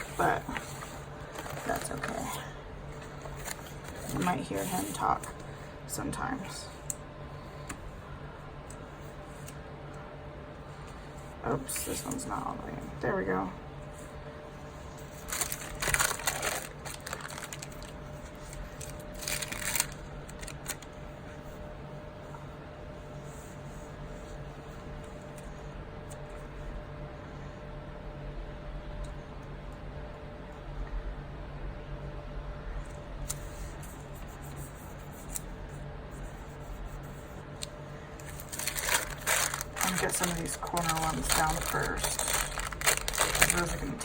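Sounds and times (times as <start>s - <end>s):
paper rustling and crinkling: 0.0s - 5.6s, 14.9s - 20.9s, 38.2s - 44.0s
steady low hum: 0.0s - 44.0s.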